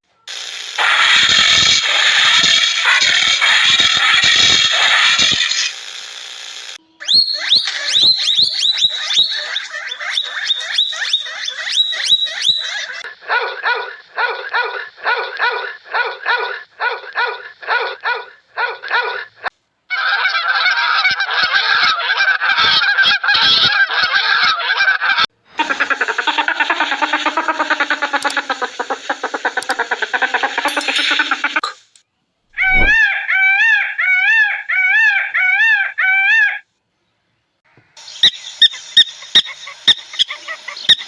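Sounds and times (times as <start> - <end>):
chorus of animal calls: 0.8 - 5.7, 7.0 - 31.8, 32.6 - 36.7, 37.7 - 41.0
honk-like animal calls: 32.6 - 33.5
short rising animal calls: 32.6 - 33.6.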